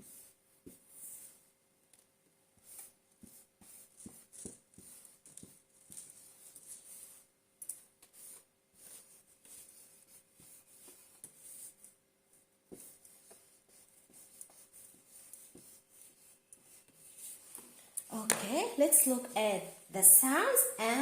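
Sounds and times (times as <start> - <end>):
pen scratching on paper: 2.6 - 11.9, 12.7 - 17.6.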